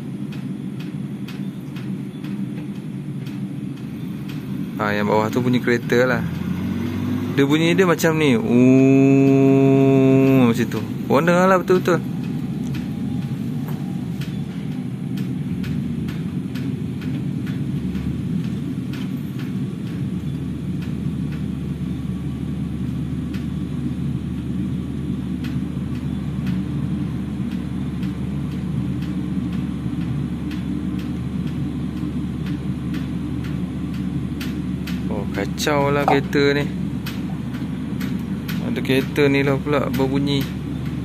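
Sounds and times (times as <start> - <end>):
low rumbling drone: 4.0 - 17.3, 35.8 - 37.9
rain dripping on a roof: 10.2 - 41.0.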